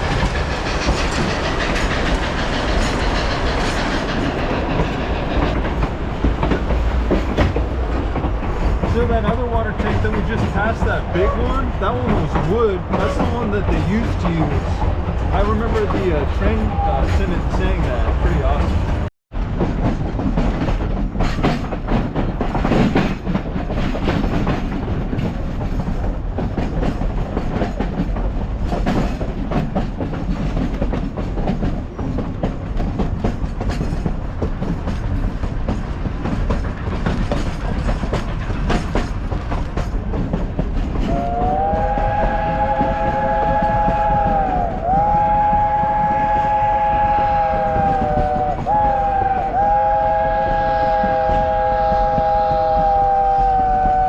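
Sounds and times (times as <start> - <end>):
wheels clicking over rail joints: 0.0 - 53.0
train coaches rumbling and rattling: 0.0 - 54.0.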